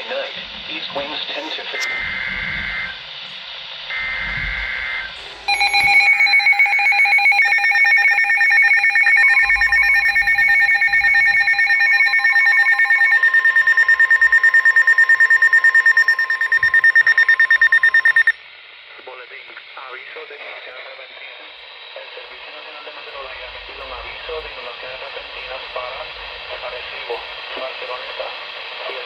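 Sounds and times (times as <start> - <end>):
pulsing two-tone alarm: 1.8 - 3.0, 3.9 - 18.4
pulsing alert alarm: 4.0 - 18.4
warbling digital header screech: 5.5 - 18.4.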